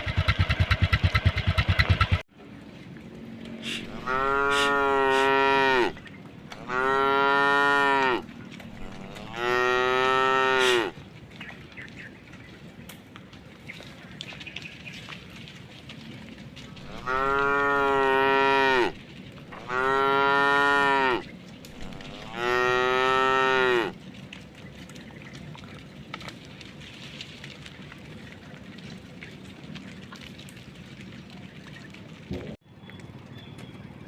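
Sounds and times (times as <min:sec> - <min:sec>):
cow mooing: 0:03.7 - 0:11.0, 0:16.8 - 0:21.2, 0:21.8 - 0:24.0.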